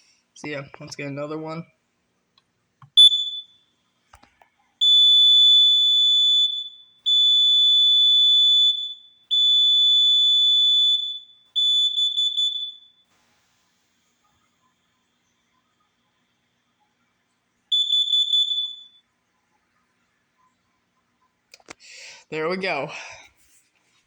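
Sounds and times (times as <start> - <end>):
detector chirp: 2.9 - 3.6, 17.7 - 19.0
high-pitched alarm beeps: 3.0 - 3.6, 4.8 - 13.0, 17.7 - 19.0.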